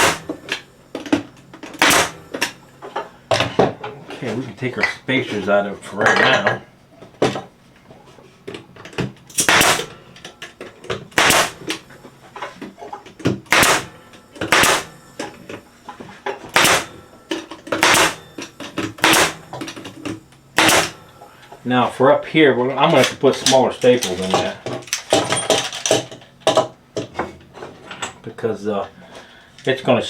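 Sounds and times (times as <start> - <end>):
pneumatic staple gun shots: 0.0 - 0.6, 1.7 - 2.6, 9.3 - 10.0, 11.1 - 11.8, 13.5 - 15.0, 16.5 - 17.0, 17.8 - 19.8, 20.6 - 21.0.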